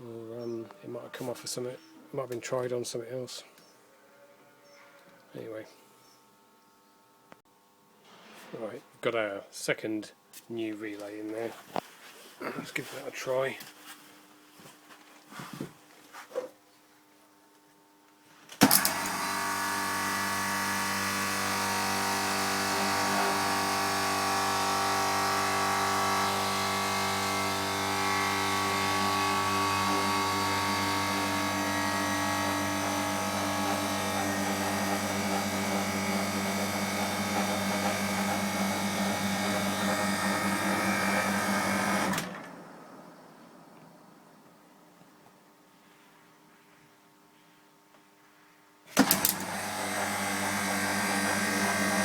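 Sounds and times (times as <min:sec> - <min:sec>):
compressor starting clunk: 0:18.5 - 0:42.7, 0:48.9 - 0:52.0
compressor humming: 0:18.6 - 0:43.2, 0:48.9 - 0:52.0.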